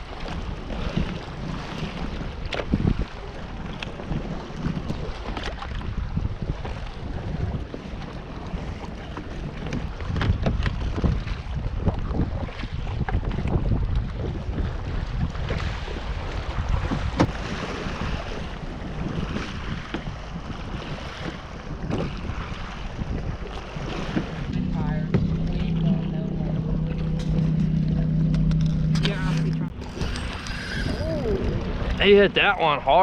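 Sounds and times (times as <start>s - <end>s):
water lapping: 0.0s - 33.0s
wind gusting over microphone: 0.0s - 33.0s.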